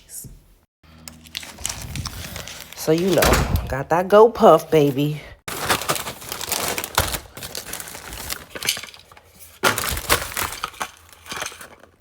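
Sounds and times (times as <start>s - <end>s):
packaging crinkling: 1.2s - 3.4s, 5.5s - 12.0s.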